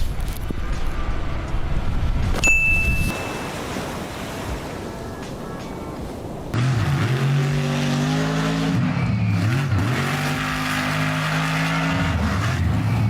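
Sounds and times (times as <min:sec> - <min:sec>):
car engine revving high: 0:06.6 - 0:13.0.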